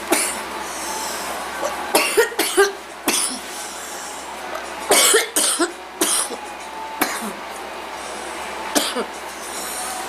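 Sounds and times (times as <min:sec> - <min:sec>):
woman coughing: 0:00.1 - 0:00.4, 0:01.9 - 0:03.4, 0:04.9 - 0:06.4, 0:07.0 - 0:07.4, 0:08.8 - 0:09.1.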